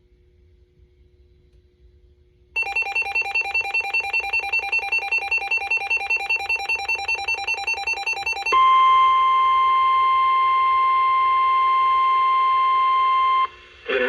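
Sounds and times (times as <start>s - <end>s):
faint low hum: 0.0s - 14.0s
two-tone electronic alarm warble: 2.6s - 13.5s.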